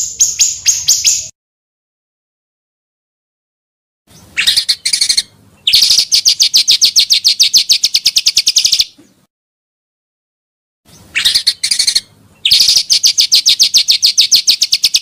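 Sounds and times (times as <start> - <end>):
bird song with fast trill: 0.0 - 1.3, 4.1 - 9.0, 10.9 - 15.0.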